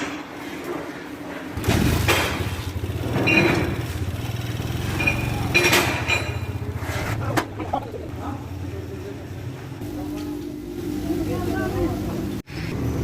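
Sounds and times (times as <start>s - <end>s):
engine running with low beat: 1.6s - 10.7s
sharp metallic knocks: 4.8s - 6.7s.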